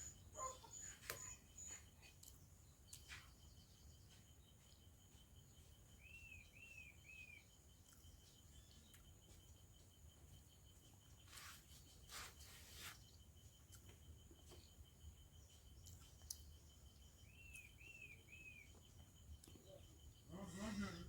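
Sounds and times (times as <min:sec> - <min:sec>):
bird chirping: 0:00.0 - 0:21.0
pulsing insect trill: 0:03.8 - 0:21.0
soft rustling: 0:11.2 - 0:13.2.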